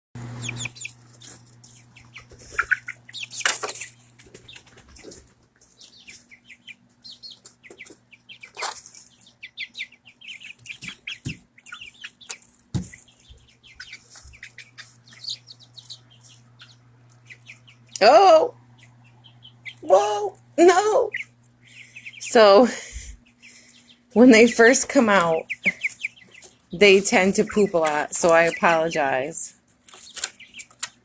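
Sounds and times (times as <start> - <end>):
chicks chirping: 0.2 - 31.0
low hum: 13.3 - 25.2.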